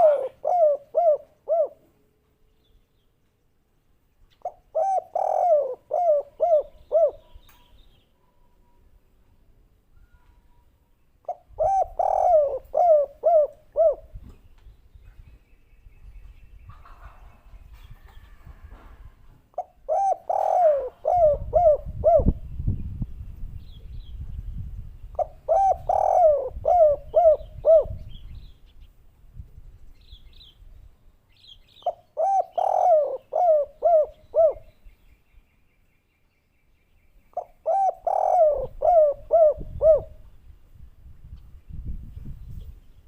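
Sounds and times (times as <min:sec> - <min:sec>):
dove cooing: 0:00.0 - 0:01.9, 0:04.4 - 0:07.4, 0:11.2 - 0:14.2, 0:19.5 - 0:22.4, 0:25.2 - 0:28.2, 0:31.8 - 0:34.7, 0:37.3 - 0:40.2.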